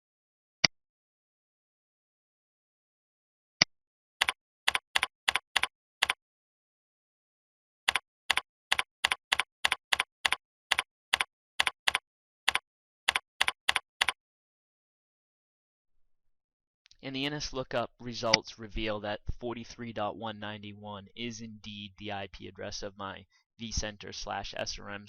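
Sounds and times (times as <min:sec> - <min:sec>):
keyboard typing: 0:04.2 - 0:06.2, 0:07.9 - 0:14.2.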